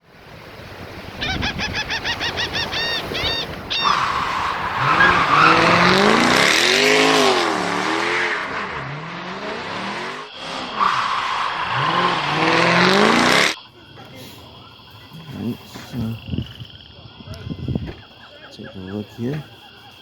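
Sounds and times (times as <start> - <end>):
tyres squealing and skidding: 1.2 - 19.6
vehicle engine revving: 3.5 - 18.0.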